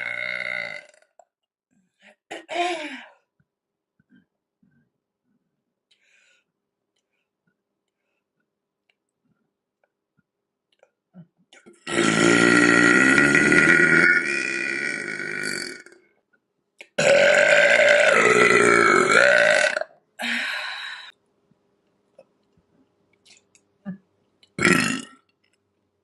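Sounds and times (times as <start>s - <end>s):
woman burping loudly: 0.0s - 1.2s, 11.8s - 16.0s, 17.0s - 20.4s, 24.6s - 25.3s.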